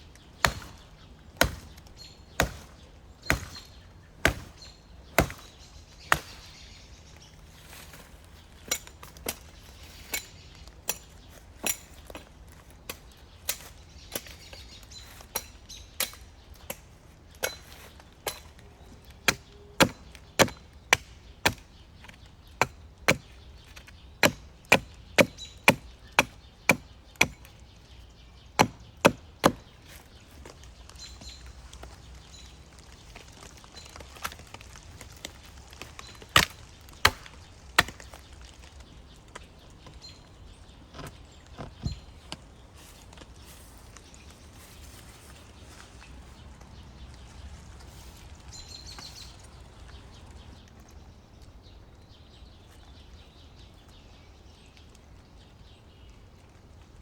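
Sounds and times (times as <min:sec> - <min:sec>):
wood chopping strikes: 0:00.4 - 0:06.5, 0:19.2 - 0:27.5, 0:28.6 - 0:29.7, 0:35.0 - 0:38.5.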